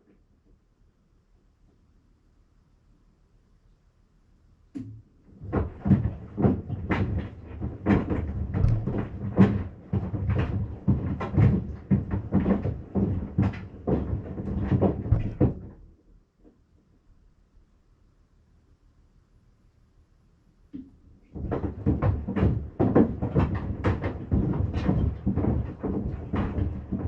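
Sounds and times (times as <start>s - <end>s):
sandals knocking in washer: 4.8s - 15.8s, 20.8s - 27.0s
washing machine swishing: 5.4s - 15.7s.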